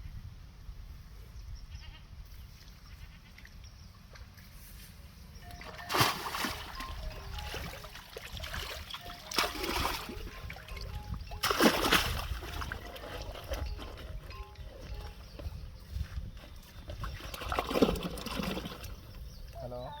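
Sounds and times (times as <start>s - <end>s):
water trickling and splashing lightly: 2.3s - 4.8s, 5.4s - 20.0s
heavy water splashes: 5.5s - 15.0s, 16.9s - 19.1s.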